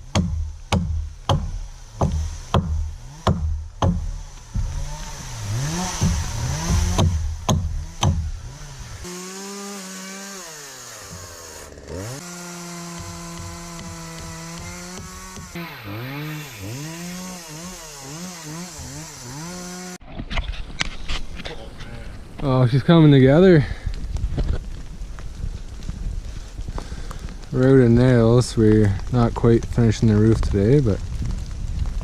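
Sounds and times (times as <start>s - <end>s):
chainsaw cutting wood: 0.0s - 20.0s
sharp knocks: 0.1s - 5.0s, 5.7s - 8.3s.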